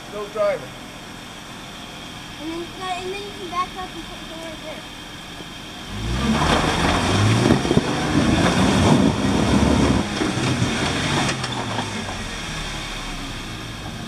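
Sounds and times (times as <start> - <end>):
car engine revving hard: 5.8 - 14.0
tyres knocking and scraping rock: 6.2 - 9.2.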